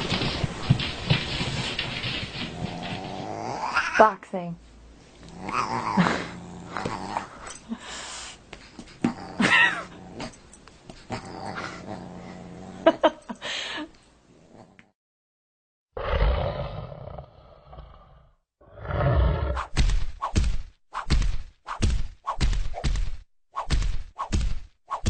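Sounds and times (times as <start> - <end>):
pets growling: 0.0 - 4.2, 5.2 - 7.7, 8.7 - 13.1.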